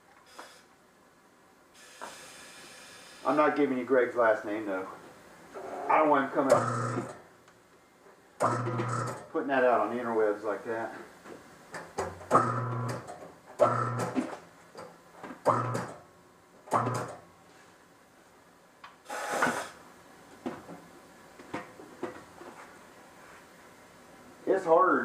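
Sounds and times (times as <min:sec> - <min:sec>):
hiss burst: 0:01.8 - 0:03.4, 0:19.0 - 0:19.8.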